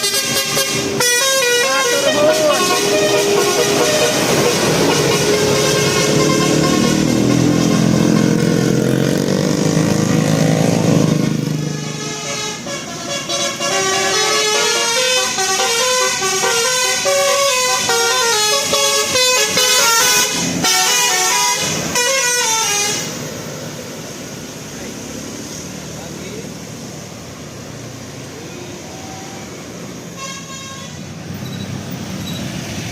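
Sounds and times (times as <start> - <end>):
bus multi-tone horn melody: 0.0 - 23.3, 29.5 - 31.3.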